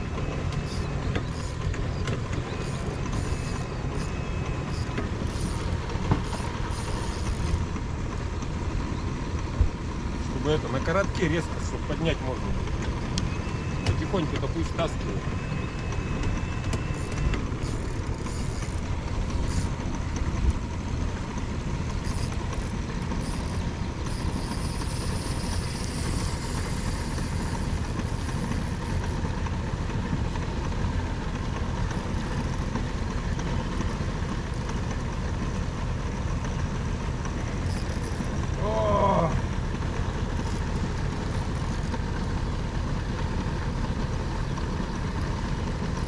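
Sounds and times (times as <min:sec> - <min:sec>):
low rumbling rush of boat: 0:00.0 - 0:46.0.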